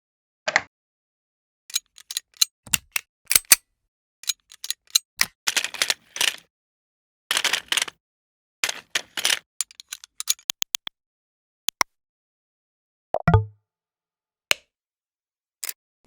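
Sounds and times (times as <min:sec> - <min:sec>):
mechanical clicks: 0:01.7 - 0:03.6, 0:09.6 - 0:10.9.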